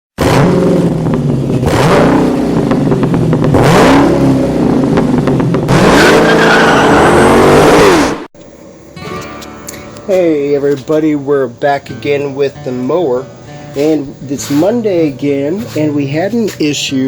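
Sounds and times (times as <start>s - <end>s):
car engine revving: 0.2s - 8.8s, 9.8s - 17.0s
tyres squealing and skidding: 5.7s - 8.2s.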